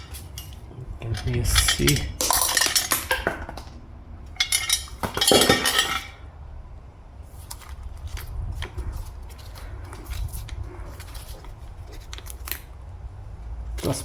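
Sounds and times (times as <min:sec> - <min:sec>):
metal parts clinking and clattering: 0:00.0 - 0:06.2.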